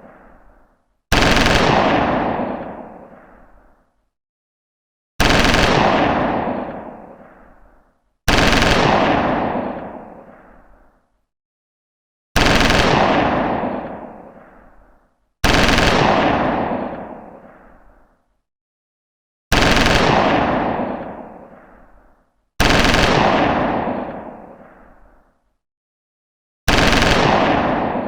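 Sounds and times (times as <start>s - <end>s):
machine gun firing: 1.1s - 3.3s, 5.2s - 7.5s, 8.3s - 10.5s, 15.4s - 17.6s, 22.6s - 24.8s, 26.7s - 28.0s.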